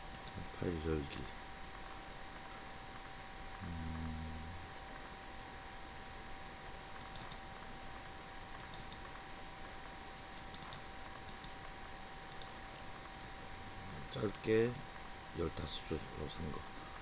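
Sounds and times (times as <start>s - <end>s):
electrical hum and hiss: 0.0s - 17.0s
computer keystroke clicks: 7.0s - 7.4s, 8.6s - 9.1s, 10.4s - 11.6s, 12.3s - 12.6s.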